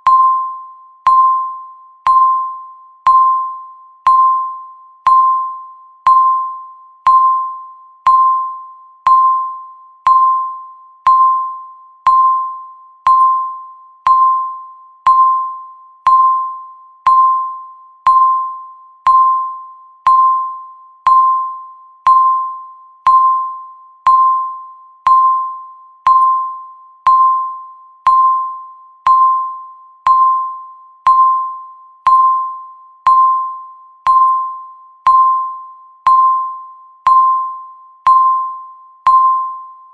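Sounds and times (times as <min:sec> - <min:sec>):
countdown timer ding: 0:00.0 - 0:39.7.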